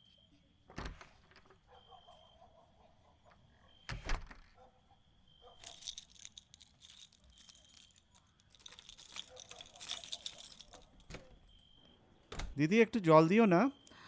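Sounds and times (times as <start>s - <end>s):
keys jangling: 5.6s - 11.2s.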